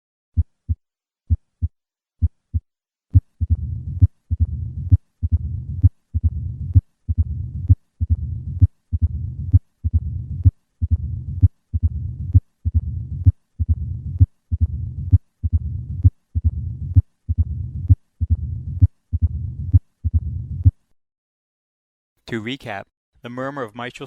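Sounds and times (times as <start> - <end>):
sharp heart sounds: 0.4 - 20.8
low rumbling heart murmur: 3.4 - 20.8.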